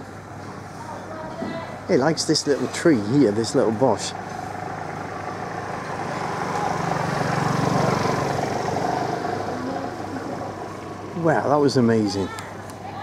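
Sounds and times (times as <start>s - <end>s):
vehicle engine passing: 1.9s - 11.9s.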